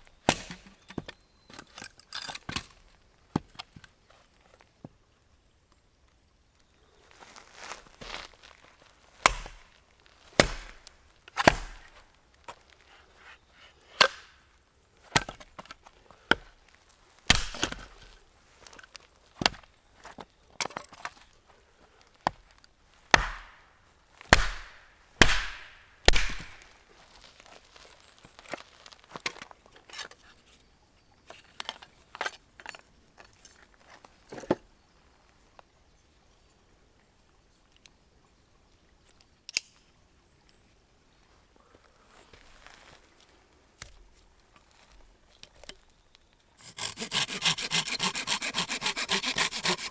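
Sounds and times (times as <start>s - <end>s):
axe chopping firewood: 0.1s - 1.1s, 9.2s - 12.1s, 13.9s - 14.4s, 15.1s - 15.7s, 16.3s - 16.5s, 17.3s - 18.0s, 23.1s - 23.7s, 24.3s - 26.7s, 46.6s - 49.9s
wood splintering crackle: 9.2s - 12.8s, 17.3s - 18.0s, 24.3s - 26.8s, 46.6s - 49.9s.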